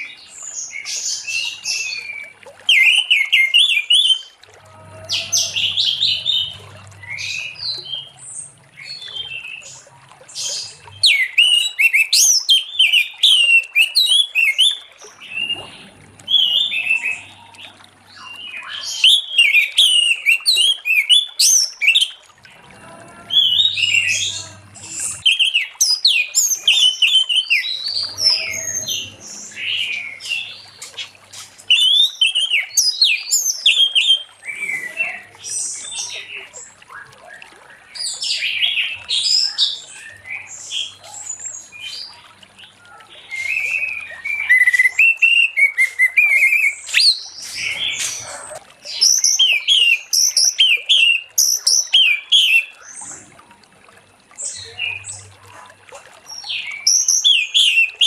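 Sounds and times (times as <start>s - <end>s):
thrush singing: 4.6s - 8.6s, 22.5s - 25.7s.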